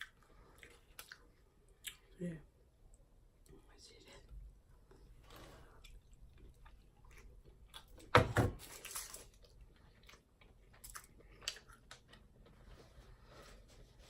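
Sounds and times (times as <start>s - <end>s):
person chewing food: 0.0s - 2.2s, 4.8s - 8.1s, 8.8s - 12.8s.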